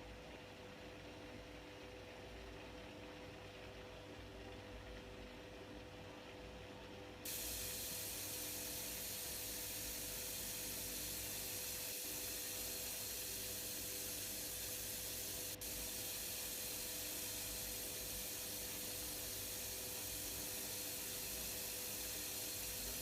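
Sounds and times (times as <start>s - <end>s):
washing machine humming: 0.0s - 23.0s
water spraying into drum: 7.3s - 23.0s.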